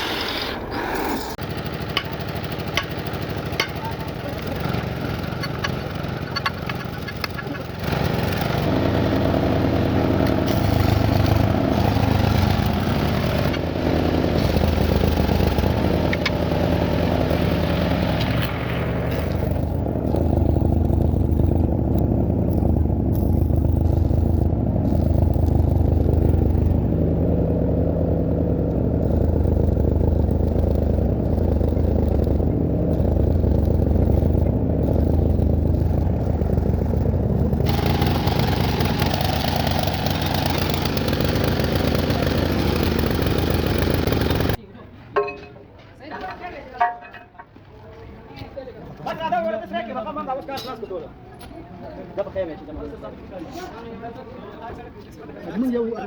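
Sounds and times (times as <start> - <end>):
scooter engine running: 0.9 - 44.6.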